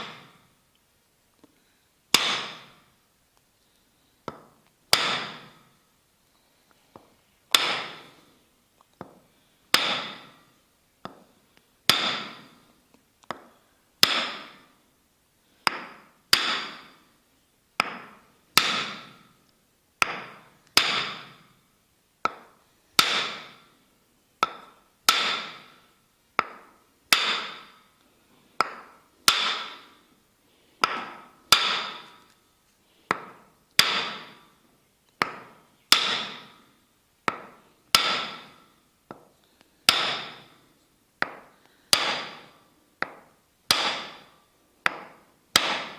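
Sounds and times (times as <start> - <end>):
wooden mallet tapping wooden wedge: 11.0 - 11.3, 13.2 - 14.6, 17.8 - 19.1, 20.0 - 21.4, 22.2 - 23.6, 24.4 - 25.7, 26.4 - 27.7, 28.6 - 29.8, 30.8 - 32.4, 33.1 - 34.4, 35.2 - 36.6, 37.3 - 39.3, 39.9 - 40.5, 41.2 - 44.3, 44.9 - 45.9.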